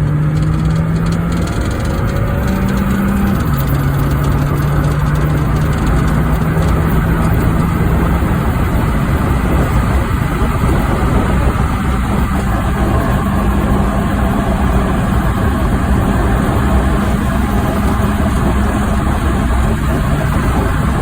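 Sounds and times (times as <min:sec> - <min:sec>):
car engine running: 0:00.0 - 0:21.0.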